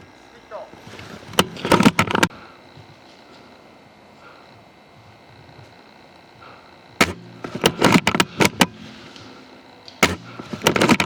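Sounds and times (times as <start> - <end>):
airsoft rifle shot: 7.0 - 9.3, 9.9 - 11.0
rifle bolt clicking: 9.8 - 11.0.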